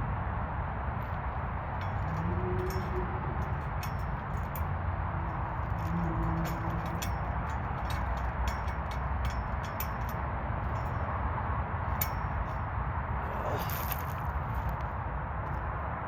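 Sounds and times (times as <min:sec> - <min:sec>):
steady background noise: 0:00.0 - 0:16.0
clicks and clinks of hardware: 0:01.8 - 0:11.0, 0:11.9 - 0:12.6.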